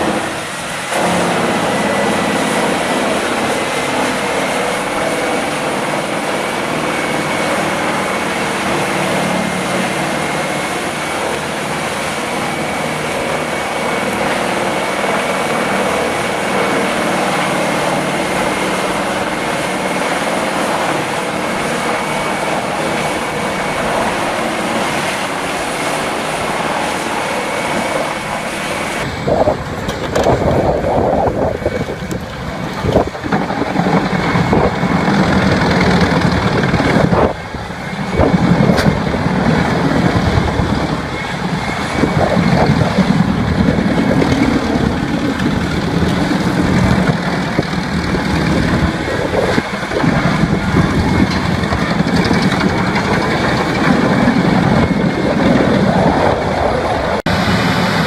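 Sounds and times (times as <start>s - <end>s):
heavy machine engine running: 0.0s - 58.0s.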